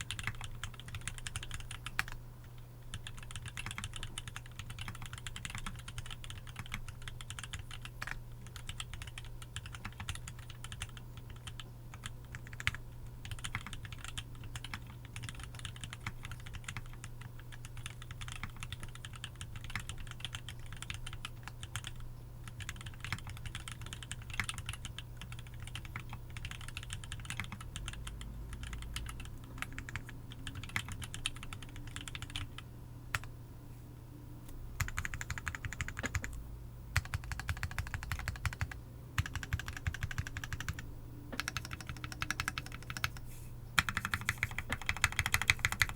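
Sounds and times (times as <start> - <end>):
mechanical keyboard typing: 0.0 - 2.2, 2.9 - 33.3, 34.8 - 36.4, 37.0 - 43.2, 43.8 - 45.9.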